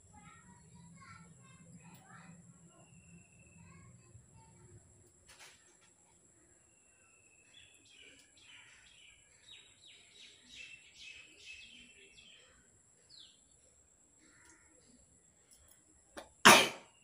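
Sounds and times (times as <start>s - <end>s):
birds chirping: 6.4s - 17.0s.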